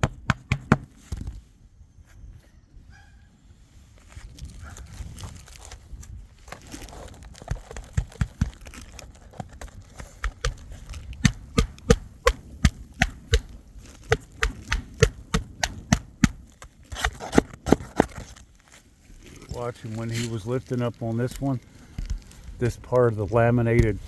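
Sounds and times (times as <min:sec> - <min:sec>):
hammer knocking on roof: 0:00.0 - 0:00.9, 0:11.2 - 0:13.4, 0:14.1 - 0:16.4.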